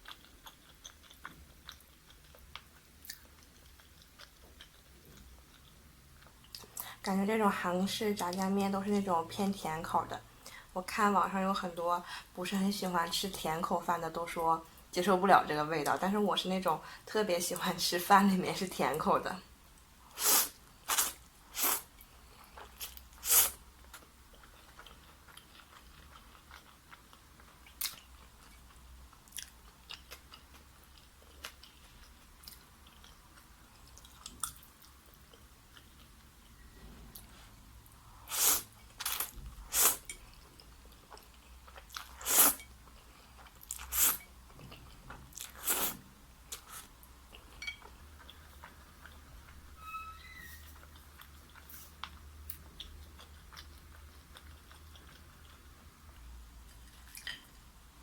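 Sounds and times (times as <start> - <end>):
crunchy chewing of fried chicken: 0.0 - 6.7, 20.0 - 49.6, 50.8 - 57.7.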